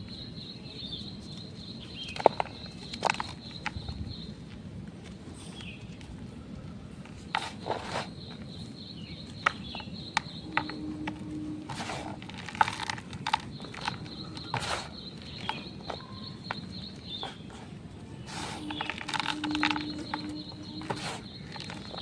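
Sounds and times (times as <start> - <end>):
chalk being crushed: 7.2 - 8.4, 9.4 - 22.0
faint steady high tone: 9.2 - 17.1, 18.0 - 22.0.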